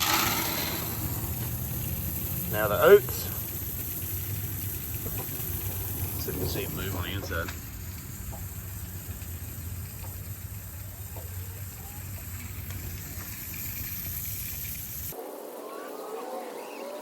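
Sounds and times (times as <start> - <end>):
oats pouring into bucket: 0.0 - 7.5.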